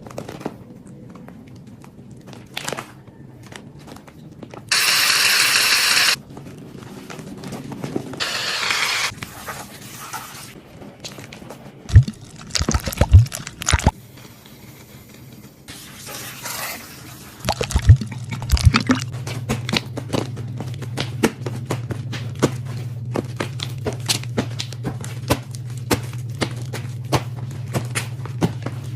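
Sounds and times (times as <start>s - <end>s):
low steady hum: 10.6s - 15.7s, 17.3s - 28.9s
wet slime squelching: 11.9s - 13.9s, 17.4s - 19.1s.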